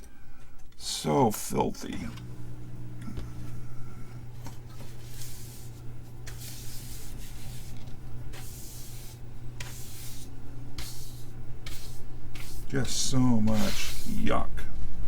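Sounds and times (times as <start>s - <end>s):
brush rasping on circuit board: 4.8s - 14.4s.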